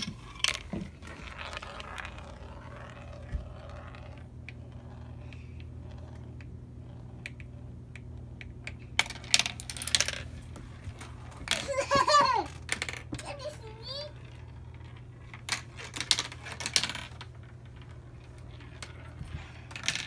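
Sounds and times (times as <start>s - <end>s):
marbles rolling on a track: 0.0s - 8.1s, 9.0s - 20.0s
marbles clacking: 9.0s - 10.3s, 11.1s - 20.0s.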